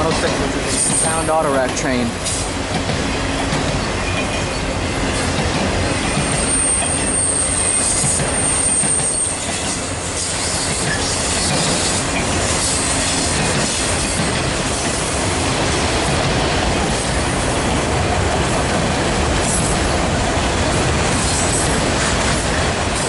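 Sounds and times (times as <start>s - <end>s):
train wheels rumbling and rattling: 0.0s - 23.0s
high wheel squeal: 3.8s - 14.2s.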